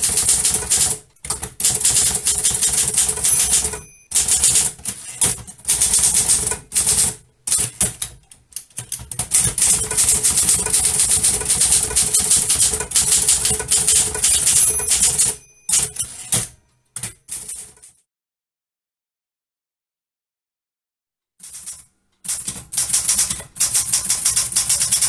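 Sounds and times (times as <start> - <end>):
manual typewriter typing: 0.0 - 18.0, 21.4 - 25.0
typewriter margin bell ringing: 1.7 - 5.4, 11.6 - 16.6.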